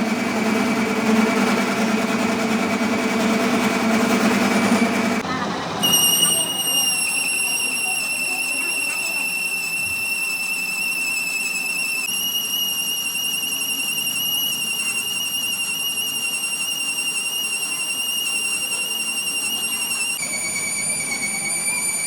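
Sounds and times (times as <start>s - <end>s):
metal-cutting tool squealing: 5.8s - 22.0s.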